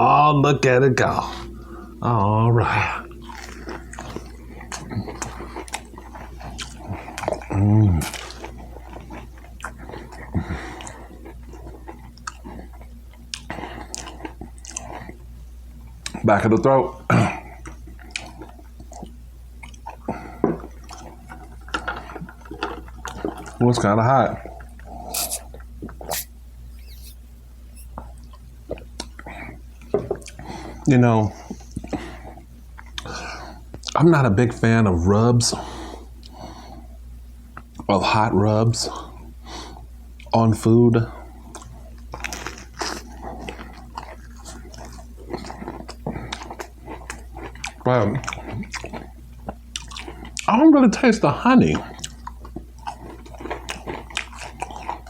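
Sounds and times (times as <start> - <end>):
steady low hum: 0.0 - 16.0, 24.6 - 28.6
chewing crispy chicken: 2.2 - 16.3, 16.9 - 25.5, 28.3 - 34.6, 41.1 - 55.0.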